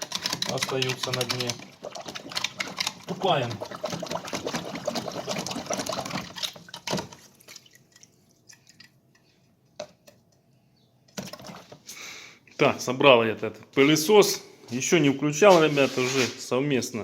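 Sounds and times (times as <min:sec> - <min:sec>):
liquid sloshing and splashing: 0:00.0 - 0:09.3, 0:11.2 - 0:11.8
faint drips: 0:07.2 - 0:09.4.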